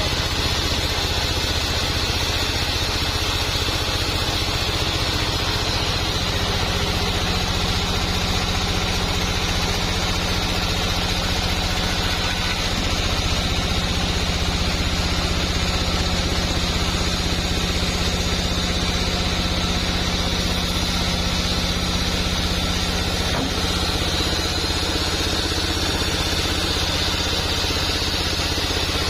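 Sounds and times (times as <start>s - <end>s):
high-pitched machine whine: 0.0s - 29.0s
sawmill machinery humming: 0.0s - 29.0s.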